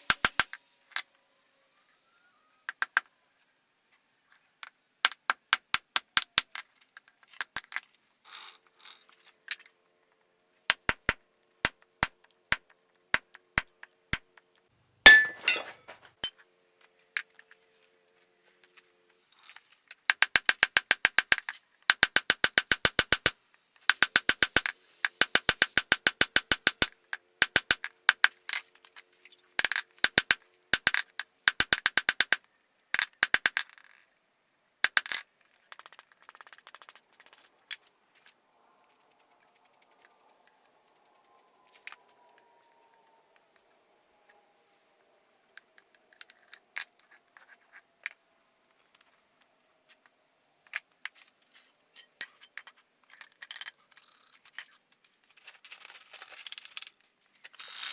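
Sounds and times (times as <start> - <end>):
hammer striking steel on anvil: 15.1 - 16.0.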